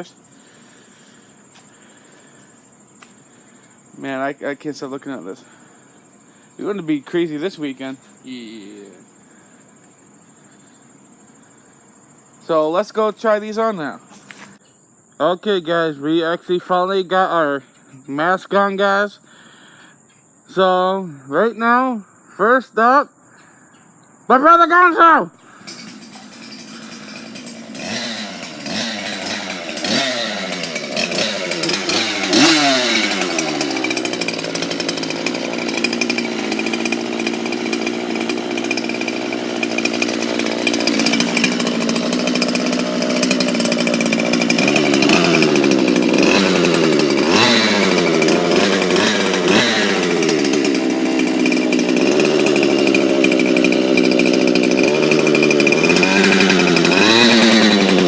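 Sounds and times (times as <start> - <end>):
chainsaw engine revving: 25.5 - 58.0.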